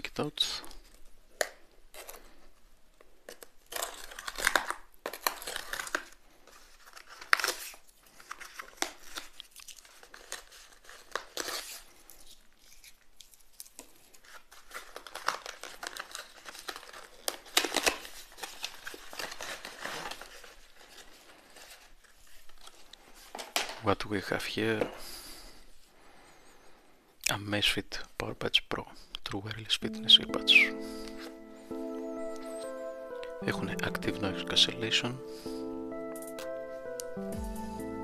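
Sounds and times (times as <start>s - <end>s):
plastic and paper crinkling: 0.0s - 25.9s, 29.6s - 35.5s
packaging ripping: 3.2s - 23.7s.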